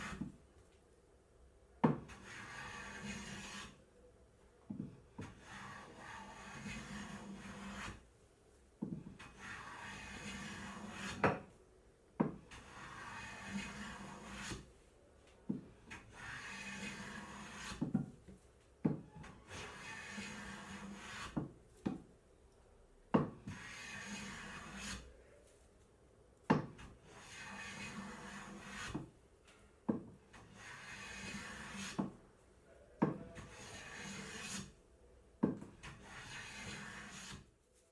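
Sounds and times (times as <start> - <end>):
hand plane rasping on wood: 2.1 - 3.7, 5.3 - 8.0, 9.2 - 11.2, 12.5 - 14.6, 16.0 - 17.9, 19.5 - 21.4, 23.5 - 25.0, 27.0 - 29.0, 30.4 - 32.1, 33.4 - 34.7, 35.8 - 37.4.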